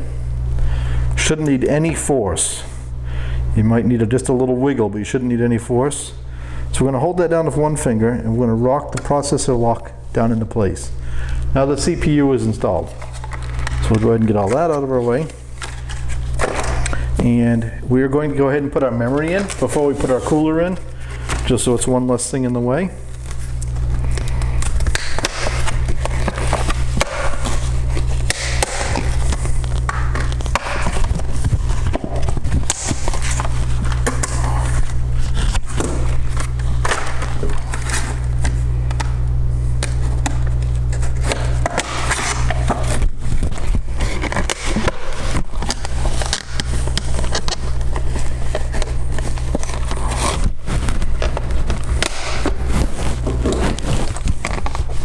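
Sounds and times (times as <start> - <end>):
steady low hum: 0.0 - 55.0
plastic packaging crackling: 12.8 - 17.2, 23.0 - 55.0.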